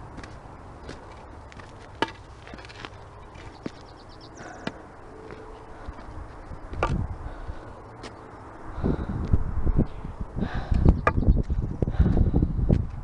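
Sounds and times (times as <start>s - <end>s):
footsteps on rock and gravel: 0.0s - 8.2s
low microphone rumble: 4.5s - 13.0s.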